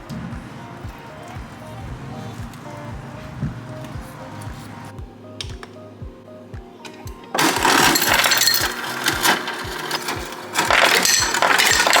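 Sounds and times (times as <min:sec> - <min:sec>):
background music with steady beat: 0:00.0 - 0:12.0.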